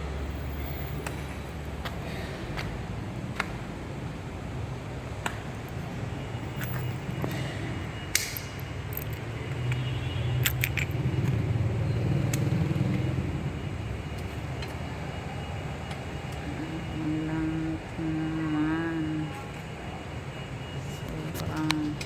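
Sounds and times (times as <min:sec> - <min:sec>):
sharp metallic clinks: 0:08.1 - 0:09.8, 0:10.4 - 0:11.4.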